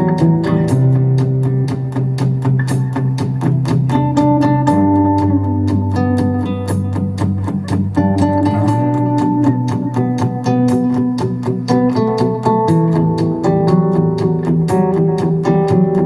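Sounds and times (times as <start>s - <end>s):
acoustic guitar: 0.0s - 16.0s
steady drum beat: 0.0s - 16.0s
sustained bass notes: 0.0s - 16.0s.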